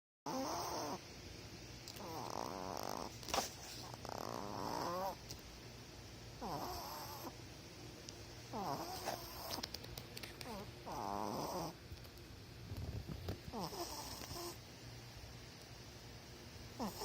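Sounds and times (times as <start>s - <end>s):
pet snoring: 0.3s - 1.0s, 1.9s - 5.2s, 6.4s - 7.4s, 8.5s - 9.6s, 10.4s - 11.8s, 13.5s - 14.6s, 16.8s - 17.0s.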